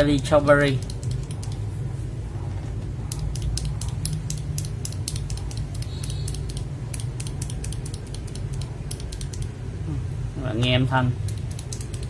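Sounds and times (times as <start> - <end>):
keyboard switches clicking: 0.0 - 1.7, 3.1 - 9.6, 10.6 - 12.0.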